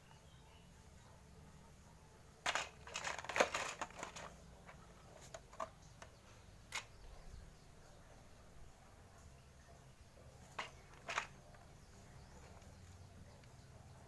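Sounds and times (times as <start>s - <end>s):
crinkling crackling handling noise: 2.4s - 7.3s, 10.3s - 13.6s.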